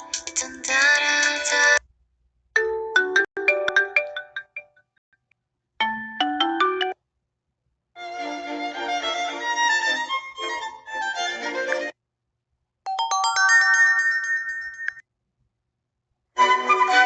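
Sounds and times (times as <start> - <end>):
phone ringtone melodies: 2.6 - 4.8, 5.8 - 7.0, 12.9 - 15.0.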